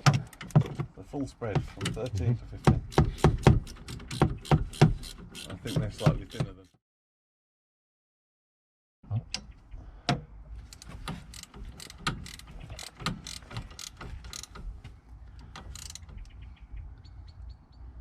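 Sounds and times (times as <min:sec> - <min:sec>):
ratchet clicking: 0:02.8 - 0:06.5, 0:10.7 - 0:14.7, 0:15.4 - 0:16.3.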